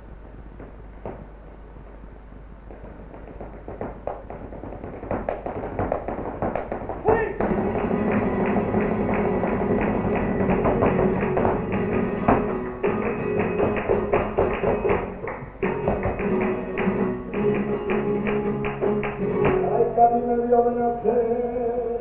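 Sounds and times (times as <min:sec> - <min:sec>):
flamenco music: 0:02.6 - 0:22.0
rhythmic percussive taps: 0:02.7 - 0:20.3
person singing: 0:15.6 - 0:22.0.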